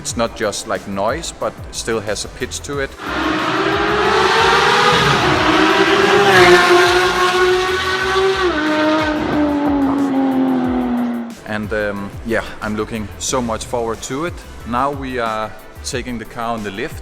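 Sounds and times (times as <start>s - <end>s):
loud car engine and exhaust: 3.0s - 11.3s.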